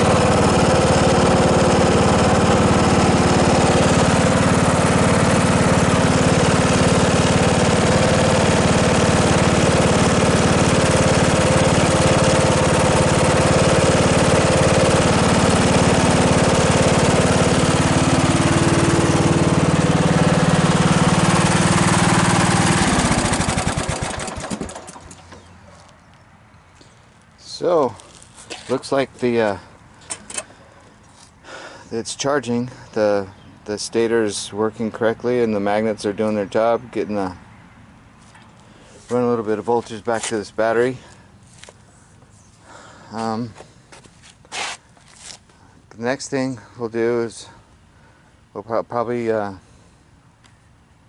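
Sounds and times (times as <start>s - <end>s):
lawnmower engine running: 0.0s - 25.7s, 27.5s - 31.8s, 38.6s - 45.7s.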